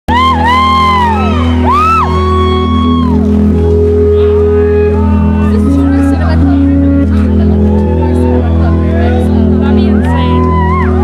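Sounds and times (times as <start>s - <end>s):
audience whooping and shouting: 0.1s - 3.8s, 4.4s - 6.3s, 7.4s - 8.8s, 9.9s - 11.0s
live rock band playing: 0.1s - 11.0s.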